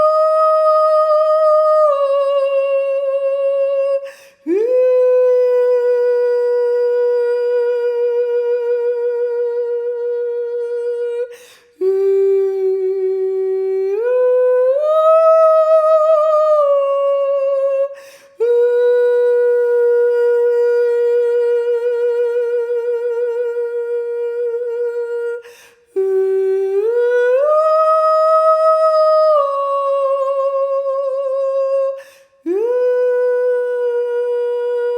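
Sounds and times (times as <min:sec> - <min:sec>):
woman singing wordless notes: 0:00.0 - 0:34.9
woman breathing: 0:04.0 - 0:04.5, 0:11.3 - 0:11.8, 0:17.9 - 0:18.4, 0:25.4 - 0:25.9, 0:32.0 - 0:32.5.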